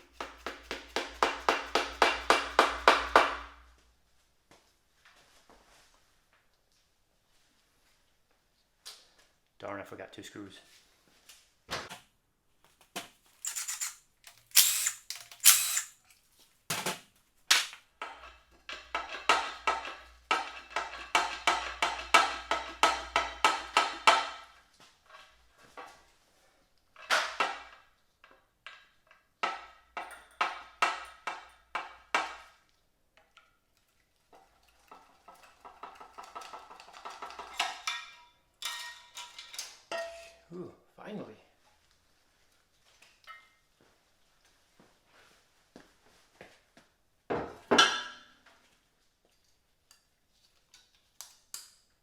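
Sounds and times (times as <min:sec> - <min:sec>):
ratchet clicking: 0:13.4 - 0:16.0.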